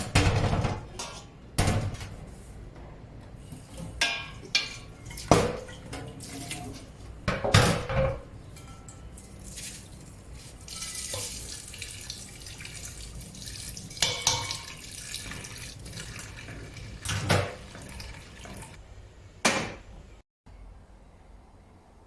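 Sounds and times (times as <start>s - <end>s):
dishes clattering: 0.1s - 2.2s, 3.7s - 9.2s, 14.0s - 14.8s.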